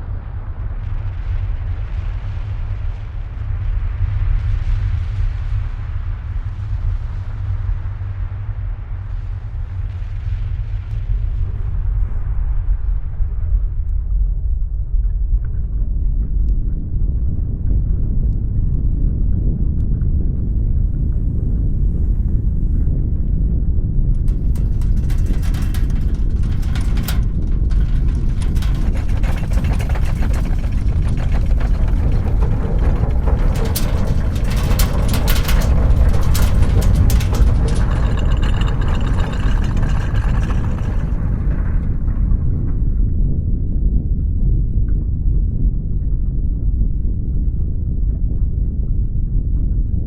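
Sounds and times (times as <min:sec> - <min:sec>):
deep earthquake rumble: 0:00.0 - 0:50.0
rattling and crackling: 0:24.0 - 0:43.0.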